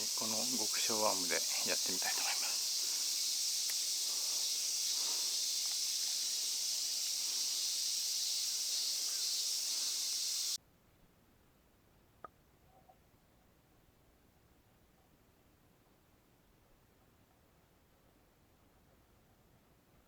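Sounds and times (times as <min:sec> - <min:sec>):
insects buzzing: 0:00.0 - 0:10.6.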